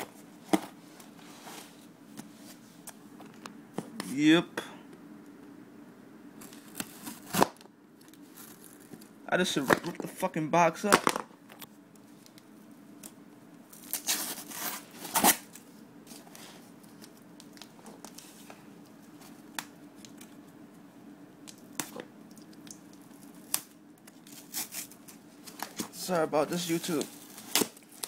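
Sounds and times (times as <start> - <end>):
cardboard and tape ripping: 6.4 - 7.6, 13.8 - 15.5, 24.3 - 25.0, 26.6 - 28.0.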